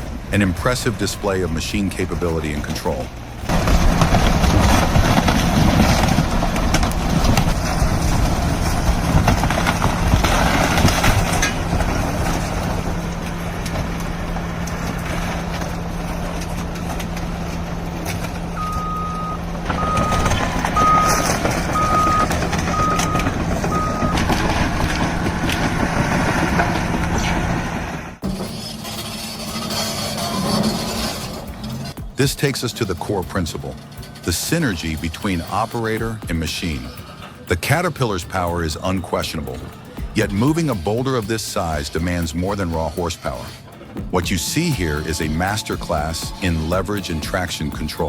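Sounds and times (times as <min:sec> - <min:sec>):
bulldozer diesel engine running: 0:00.0 - 0:48.0
backup alarm beeping: 0:18.5 - 0:25.4.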